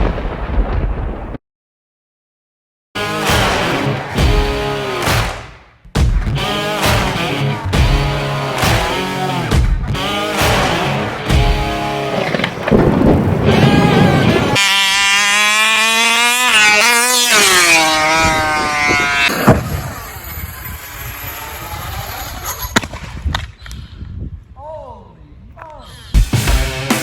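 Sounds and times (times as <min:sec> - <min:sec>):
sharp crack: 0:04.9 - 0:05.6, 0:22.5 - 0:23.6
rc car high whine: 0:13.4 - 0:22.8
rc car running noise: 0:13.5 - 0:22.8.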